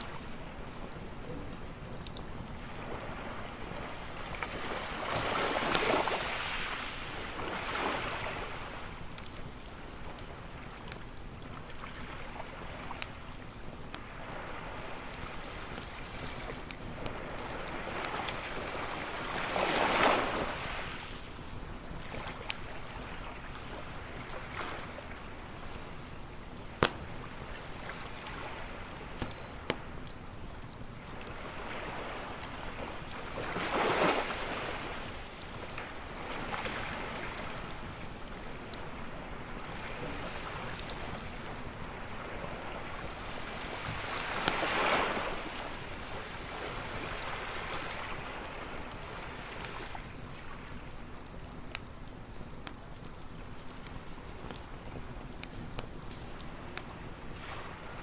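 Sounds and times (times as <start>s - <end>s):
campfire popping and crackling: 0.0s - 58.0s
ocean waves breaking: 2.6s - 9.0s, 14.0s - 21.2s, 31.2s - 38.0s, 39.0s - 50.7s.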